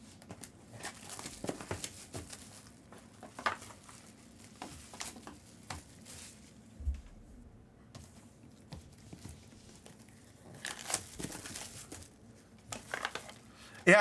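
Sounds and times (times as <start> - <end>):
card packs crinkling and rustling: 0.1 - 6.8, 8.0 - 14.0.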